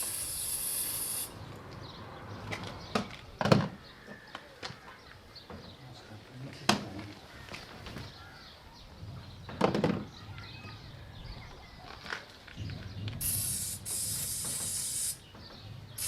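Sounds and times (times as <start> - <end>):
pressurised spray hissing: 0.0 - 1.4, 13.2 - 15.3.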